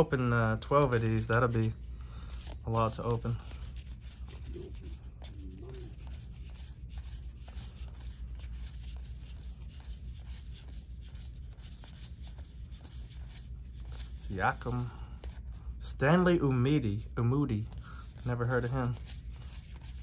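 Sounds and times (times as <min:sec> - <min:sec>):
steady low hum: 0:00.0 - 0:20.0
trading cards sliding and tapping: 0:00.5 - 0:15.5.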